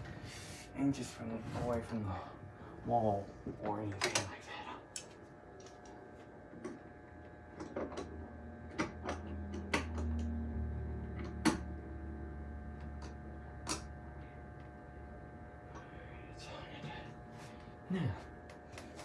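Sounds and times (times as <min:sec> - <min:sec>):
low hum: 0:07.5 - 0:18.5.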